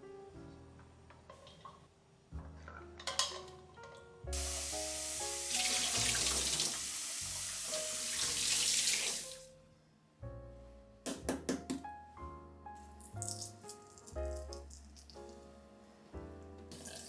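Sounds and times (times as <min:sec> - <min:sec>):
tap water running into sink: 0:04.4 - 0:09.4, 0:16.7 - 0:17.0.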